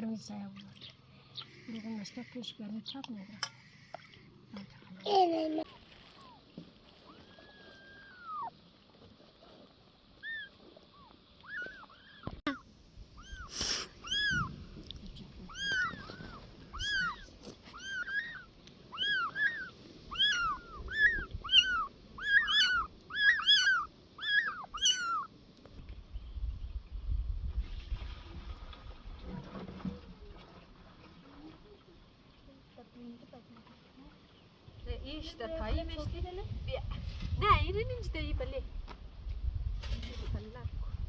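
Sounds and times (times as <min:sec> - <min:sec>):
short high animal calls: 0:06.0 - 0:08.6, 0:10.2 - 0:12.6, 0:13.2 - 0:14.5, 0:15.5 - 0:25.3
brief hiss: 0:13.4 - 0:14.1.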